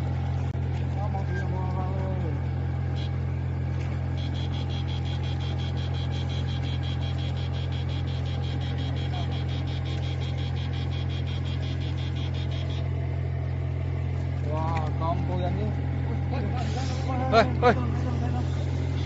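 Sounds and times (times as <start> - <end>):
boat engine droning: 0.0 - 19.0
rapid high-pitched ticking: 4.2 - 12.9.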